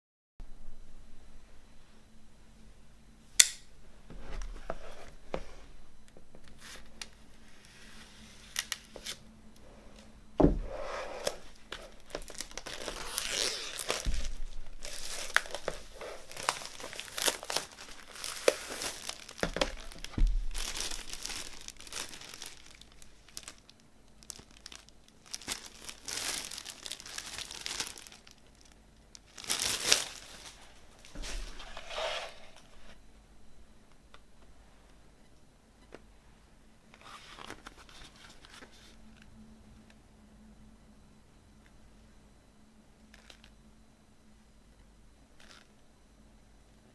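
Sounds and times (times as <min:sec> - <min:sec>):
plastic wrapping tearing and crinkling: 0:06.6 - 0:09.2, 0:11.2 - 0:32.7.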